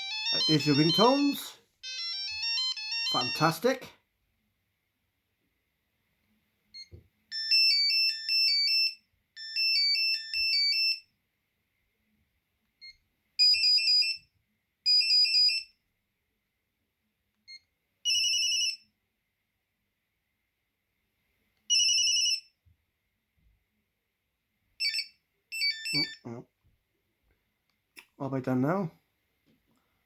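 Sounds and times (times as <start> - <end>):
high-pitched beeping ringtone: 0.0 - 3.7, 7.3 - 11.0, 24.8 - 26.4.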